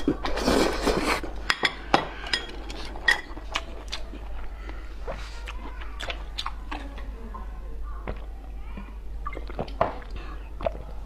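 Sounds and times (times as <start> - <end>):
soft mouth noises: 8.0 - 11.0.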